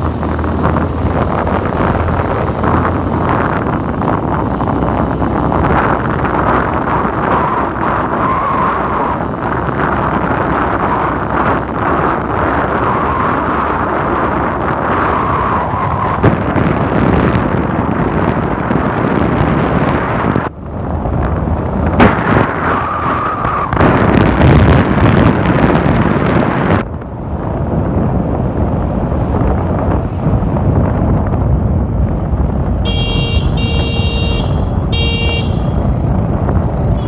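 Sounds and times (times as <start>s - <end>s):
wind buffeting microphone: 0.0s - 37.0s.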